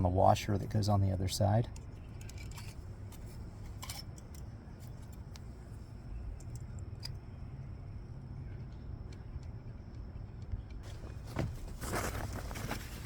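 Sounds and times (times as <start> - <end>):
low steady hum: 0.0 - 13.0
small metal parts clicking: 1.7 - 5.4.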